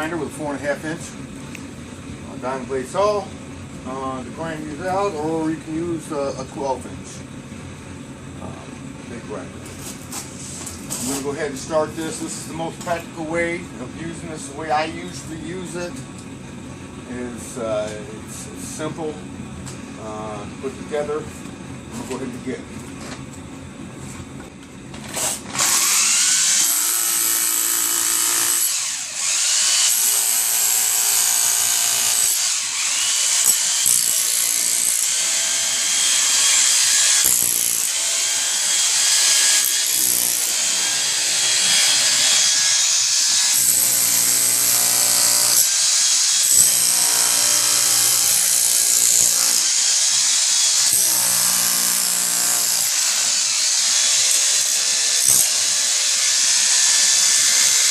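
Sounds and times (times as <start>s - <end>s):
rotary hammer chiselling brick: 26.7s - 28.8s, 29.5s - 42.5s, 43.4s - 50.0s, 50.7s - 53.3s.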